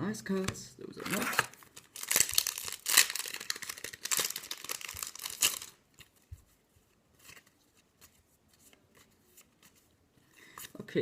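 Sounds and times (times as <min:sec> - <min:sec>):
foil wrapper crinkling and tearing: 0:01.0 - 0:05.8.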